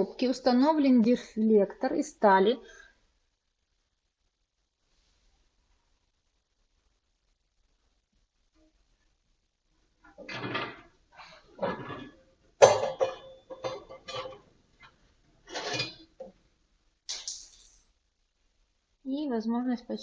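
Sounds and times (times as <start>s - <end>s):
metal plate clanking and scraping: 10.2s - 14.5s, 15.5s - 16.2s.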